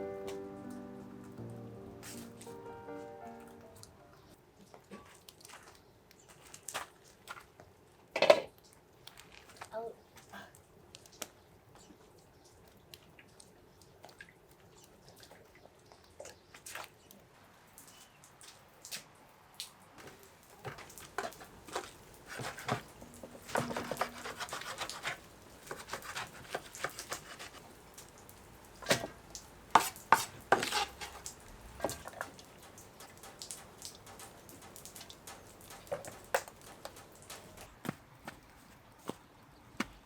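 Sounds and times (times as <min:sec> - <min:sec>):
dishes and pots clattering: 0:21.1 - 0:27.5.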